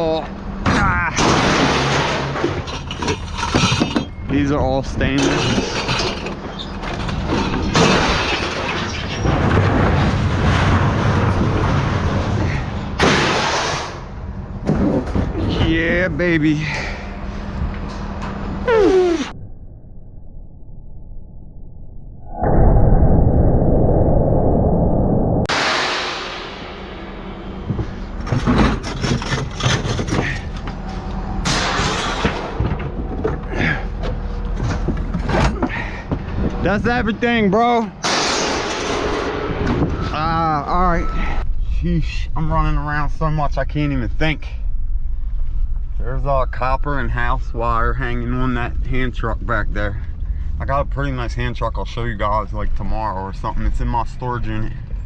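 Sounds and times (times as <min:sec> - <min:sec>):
metal scrap crashing and clattering: 0:01.2 - 0:04.2, 0:05.0 - 0:14.1, 0:25.5 - 0:27.0, 0:28.2 - 0:30.6, 0:31.4 - 0:33.2, 0:38.0 - 0:39.8
steady low hum: 0:09.7 - 0:55.0.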